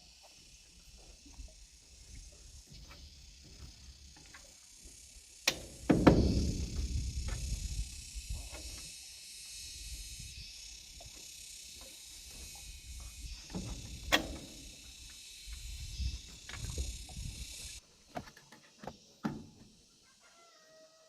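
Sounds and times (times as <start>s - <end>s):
insect chirring: 0.0s - 21.0s
low thumps and knocks: 5.5s - 8.0s.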